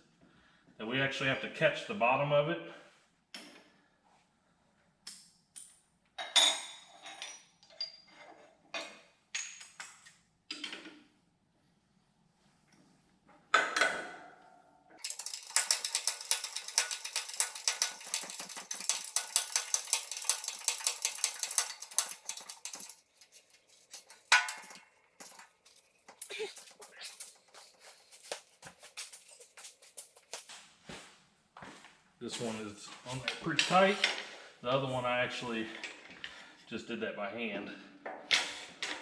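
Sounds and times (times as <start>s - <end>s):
metal tools clinking: 6.4s - 8.3s, 15.0s - 30.5s
ratchet wrench clicking: 15.0s - 25.8s
metal clank: 15.1s - 27.6s.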